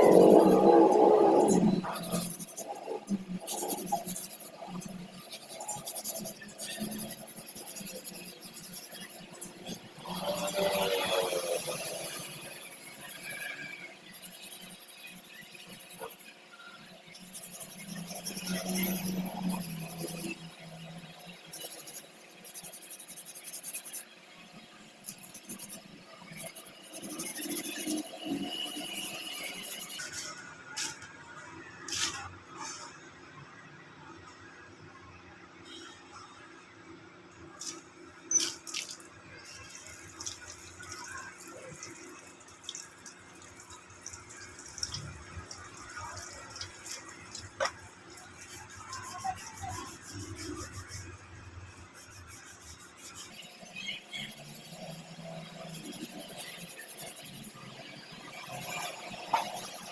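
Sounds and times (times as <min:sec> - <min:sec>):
scratching and scraping strokes: 0:00.0 - 0:33.8, 0:37.5 - 0:59.9
thin high squeal: 0:48.2 - 0:59.9.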